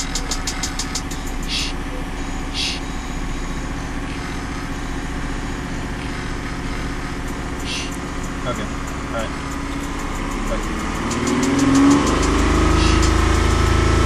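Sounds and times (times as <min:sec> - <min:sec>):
truck engine idling: 0:00.0 - 0:14.0.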